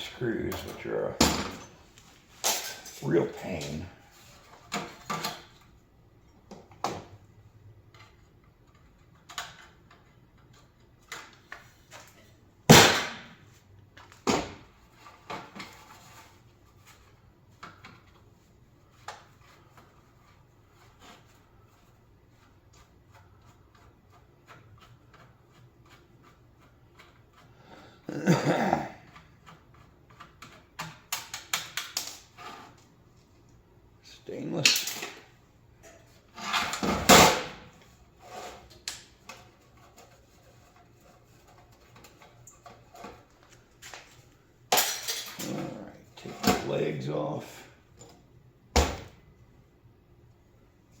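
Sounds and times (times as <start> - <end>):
metal parts clattering: 44.7 - 45.7.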